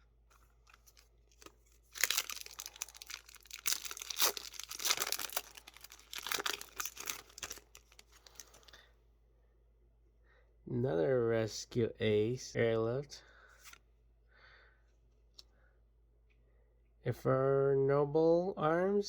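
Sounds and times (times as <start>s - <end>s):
wrapper tearing and crinkling: 0.7s - 8.8s.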